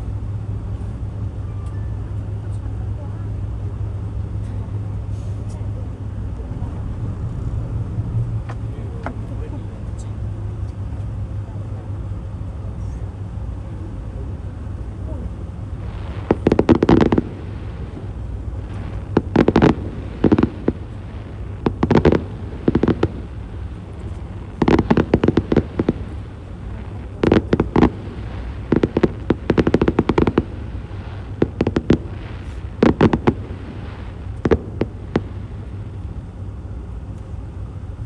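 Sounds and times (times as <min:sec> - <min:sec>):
low background rumble: 0:00.0 - 0:38.0
fireworks crackling bangs: 0:04.0 - 0:11.4, 0:15.1 - 0:38.0.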